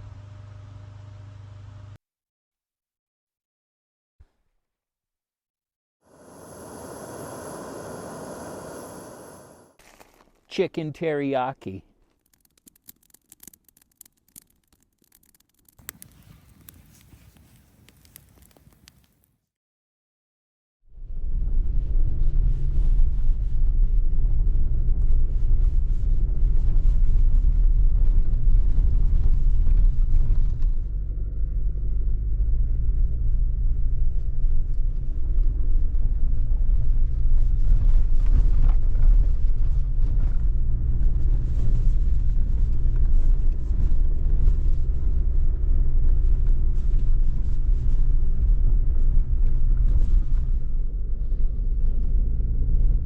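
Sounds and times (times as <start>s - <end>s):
road rumble: 21.1s - 53.0s.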